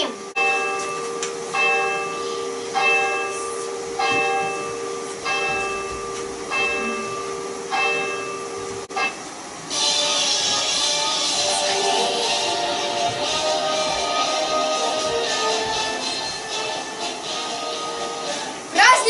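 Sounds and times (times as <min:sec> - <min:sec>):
church bell tolling: 0:00.0 - 0:09.6
steady hum: 0:00.0 - 0:19.0.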